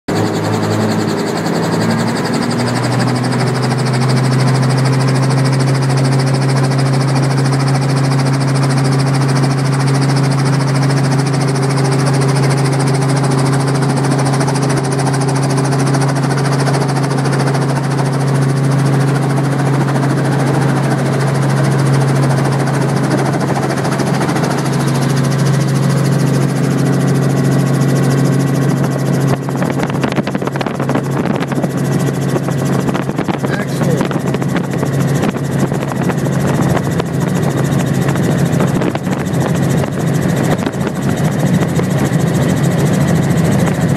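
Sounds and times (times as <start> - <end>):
helicopter cabin droning hum: 0.1 - 43.9.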